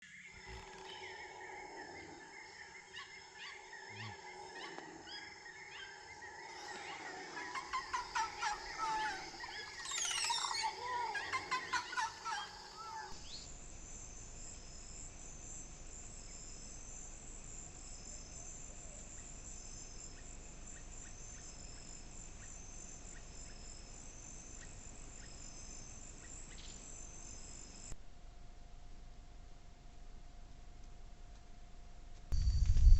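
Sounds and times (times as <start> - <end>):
bird calls: 0.0 - 13.5
high insect buzz with pulsed notes: 0.0 - 28.0
insects chorus: 0.0 - 28.0
rapid repeated calls: 6.6 - 13.2.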